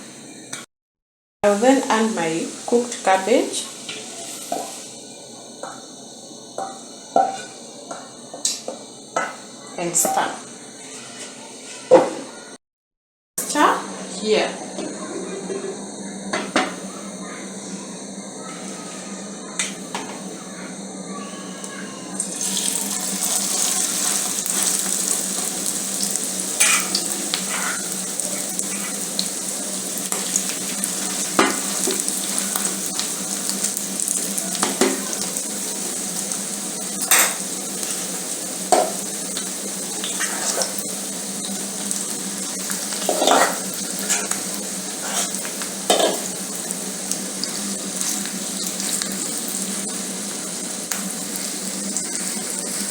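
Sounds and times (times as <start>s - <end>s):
food sizzling in a frying pan: 1.4s - 12.5s, 13.4s - 52.9s
utensil scraping a pan: 10.8s - 12.0s, 26.6s - 28.0s, 42.9s - 46.3s.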